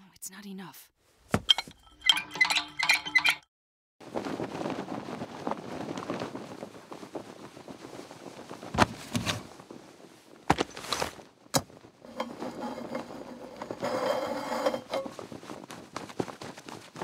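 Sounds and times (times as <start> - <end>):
continuous rustling: 4.0 - 17.0.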